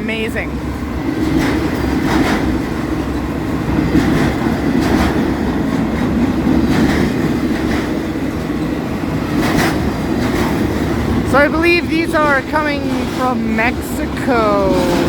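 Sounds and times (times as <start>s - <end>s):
steel wheels rumbling on rail: 0.0s - 15.0s
wheels clacking over rail joints: 0.7s - 15.0s.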